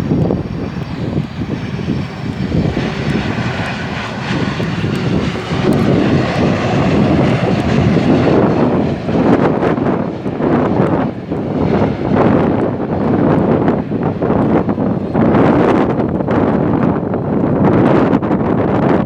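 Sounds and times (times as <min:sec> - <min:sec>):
jet engines rumbling and whining: 0:00.0 - 0:19.0
wind buffeting microphone: 0:00.0 - 0:19.0.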